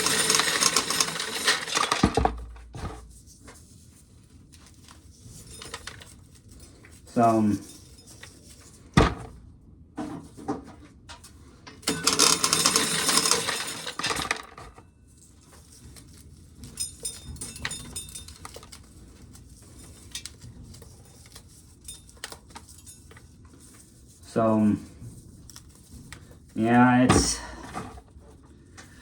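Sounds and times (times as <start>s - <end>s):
corn kernels rattling into a pail: 0.0s - 3.0s, 11.9s - 14.8s.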